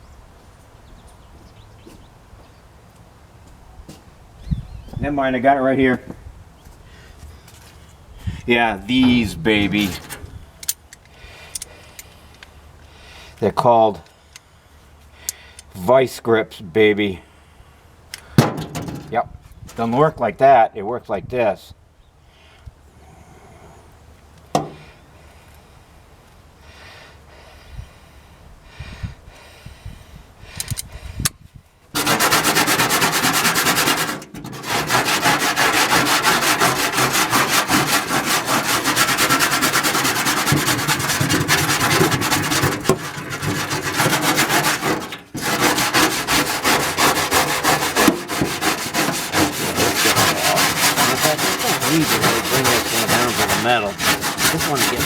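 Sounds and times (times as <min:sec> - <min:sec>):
wire brush scrubbing metal pan: 0:08.6 - 0:10.2, 0:32.0 - 0:55.0.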